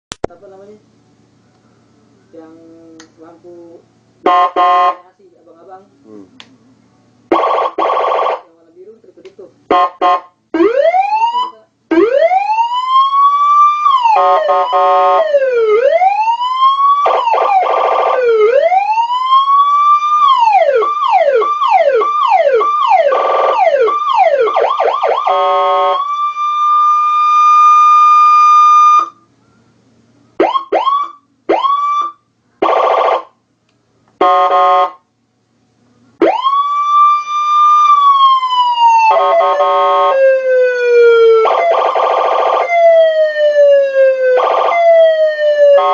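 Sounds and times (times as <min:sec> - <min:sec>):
buzzing interrupt horn: 0:04.2 - 0:05.0, 0:25.2 - 0:26.0, 0:34.2 - 0:35.0
electronic siren tones: 0:09.7 - 0:29.2, 0:30.4 - 0:33.3, 0:36.2 - 0:45.9.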